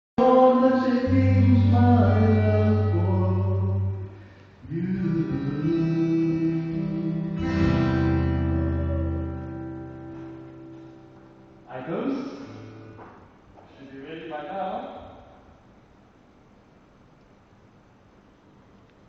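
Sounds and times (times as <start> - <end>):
person singing: 0.2 - 9.9
guitar chords: 0.2 - 13.2
worship band music: 0.2 - 13.2.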